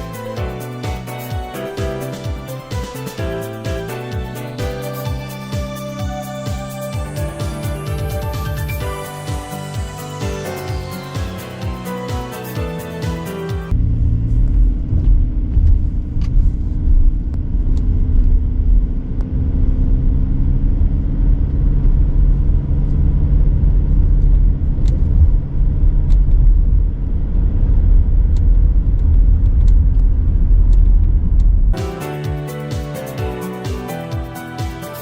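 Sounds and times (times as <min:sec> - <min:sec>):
car road rumble with hum: 0:13.7 - 0:31.8.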